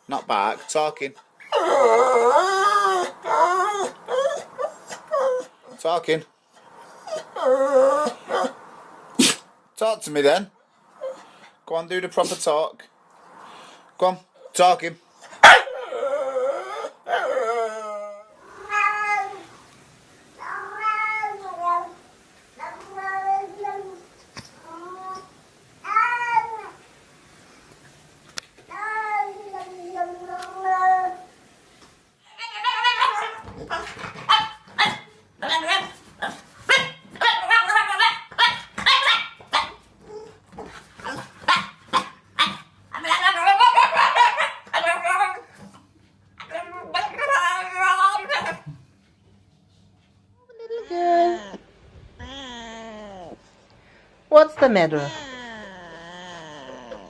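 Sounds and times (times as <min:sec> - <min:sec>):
dog barking: 0:15.4 - 0:15.8, 0:32.7 - 0:33.4, 0:36.7 - 0:39.8, 0:41.5 - 0:45.0
meow-like yowls: 0:15.8 - 0:19.6.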